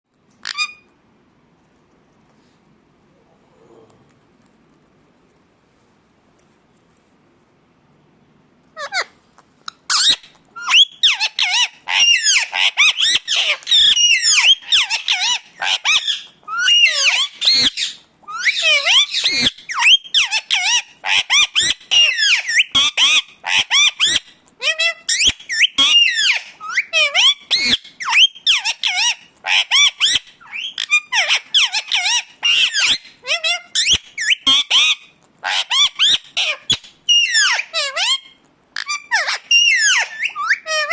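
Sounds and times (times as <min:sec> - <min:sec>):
parakeet squawking: 0:00.4 - 0:01.0, 0:08.8 - 0:40.9.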